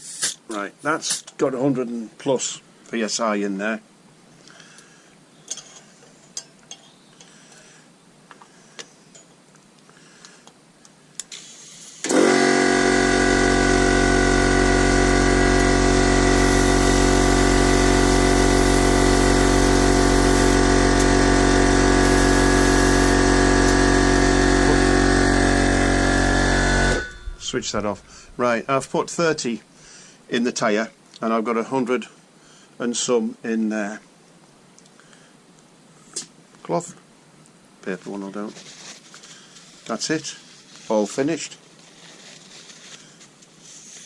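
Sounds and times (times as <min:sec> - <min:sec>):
electric air compressor running: 0:11.3 - 0:28.3.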